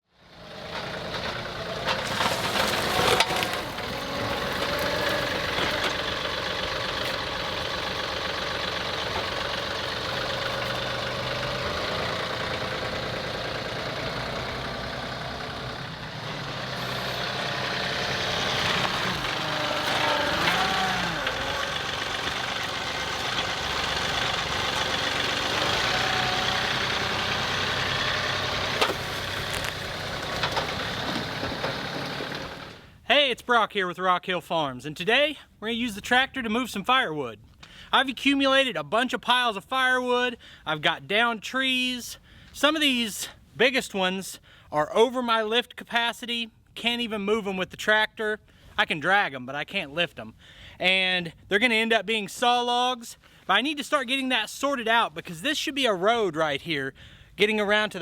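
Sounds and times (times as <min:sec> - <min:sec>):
tractor diesel engine running: 0:00.1 - 0:33.0.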